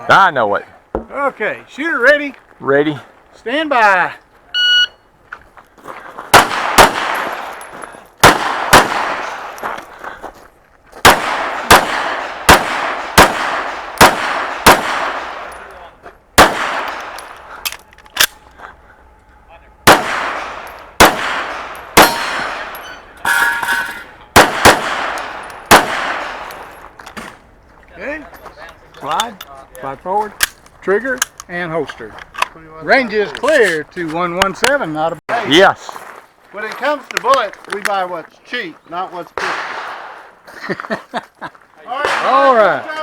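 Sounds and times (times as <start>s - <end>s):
pistol shots with echo: 6.3s - 7.6s, 8.2s - 9.6s, 11.0s - 15.7s, 16.4s - 17.4s, 19.8s - 26.7s, 39.4s - 40.2s, 42.0s - 42.8s.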